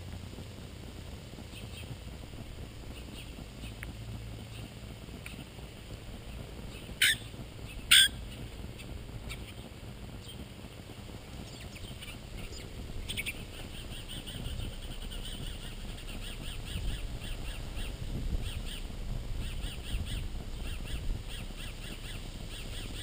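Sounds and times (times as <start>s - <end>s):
harsh bird calls: 1.5s - 2.0s, 2.8s - 3.8s, 6.2s - 10.5s, 11.2s - 23.0s
high bird chirps: 11.4s - 23.0s.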